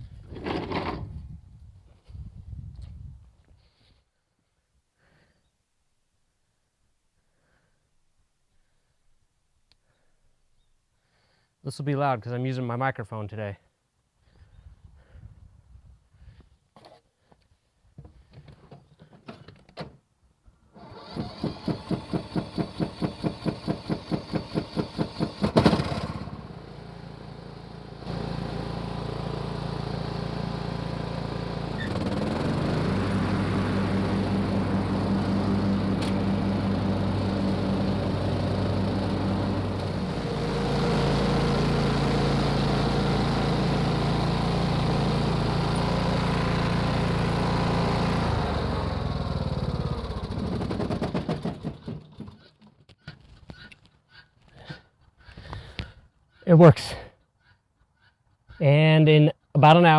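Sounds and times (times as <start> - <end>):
riding mower engine running: 20.8 - 52.3.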